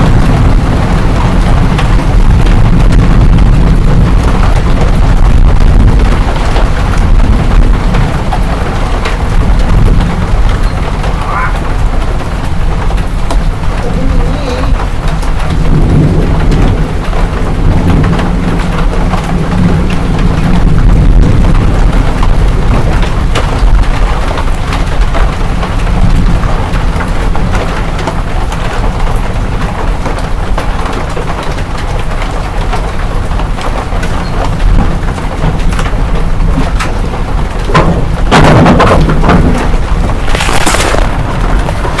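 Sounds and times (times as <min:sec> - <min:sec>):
low rumble: 0:00.0 - 0:27.0
hail and rain pelting: 0:00.0 - 0:42.0.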